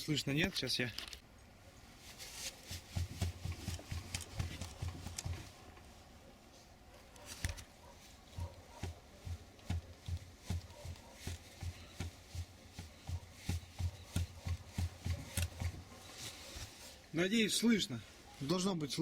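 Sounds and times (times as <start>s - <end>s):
shock absorber knocking dully: 2.7s - 5.6s, 8.4s - 16.0s.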